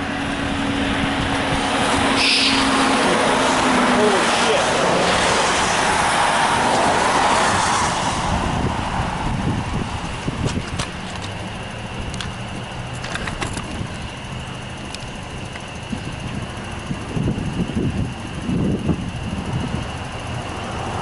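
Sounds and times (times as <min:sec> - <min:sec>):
vehicle passing: 0:00.0 - 0:10.4.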